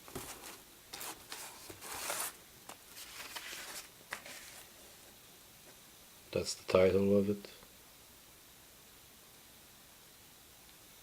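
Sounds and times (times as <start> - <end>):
cardboard record sleeve rustling: 0.0 - 5.0.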